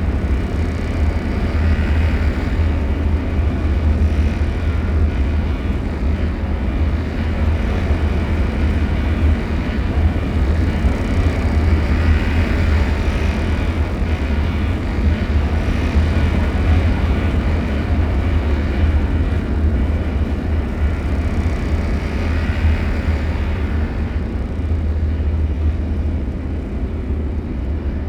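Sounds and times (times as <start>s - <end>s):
deep rumbling drone: 0.0s - 28.0s.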